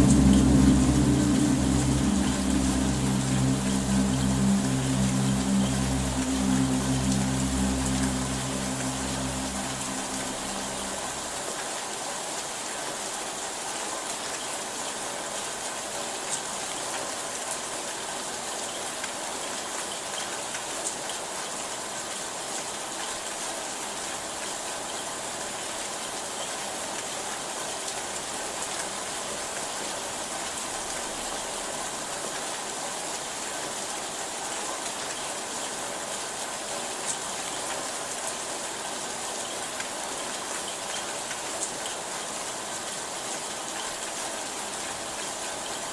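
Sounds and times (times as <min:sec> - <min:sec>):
steady rain hiss: 0:00.0 - 0:45.9.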